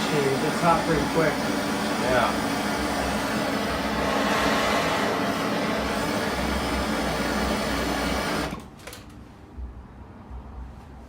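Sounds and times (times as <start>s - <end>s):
gas torch hissing: 0.0s - 8.7s.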